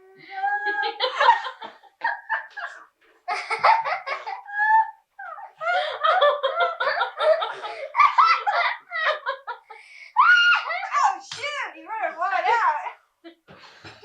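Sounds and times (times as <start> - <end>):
child giggling: 0.4 - 9.7
adults laughing: 0.6 - 4.8, 5.6 - 9.8.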